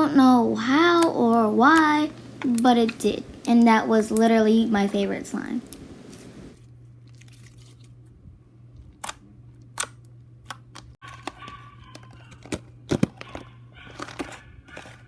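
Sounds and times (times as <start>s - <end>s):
steady low hum: 0.0s - 6.6s.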